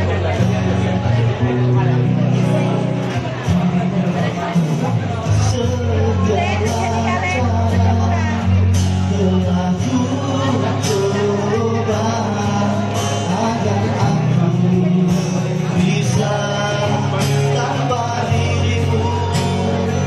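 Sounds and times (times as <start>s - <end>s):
pop ballad with singing: 0.0s - 20.0s.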